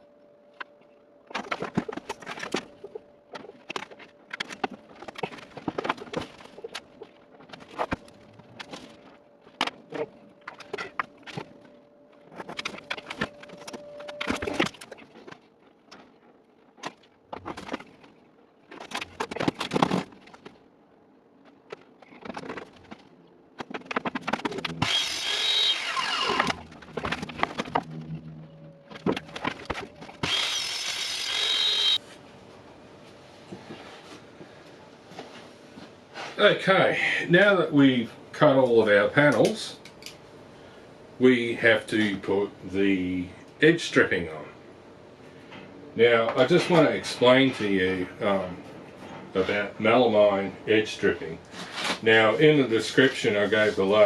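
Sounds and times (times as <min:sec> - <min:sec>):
power saw cutting board: 0:24.3 - 0:32.0.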